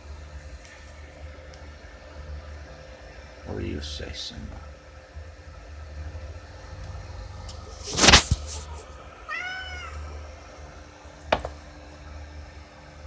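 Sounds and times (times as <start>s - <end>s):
cat meowing: 8.6s - 10.2s.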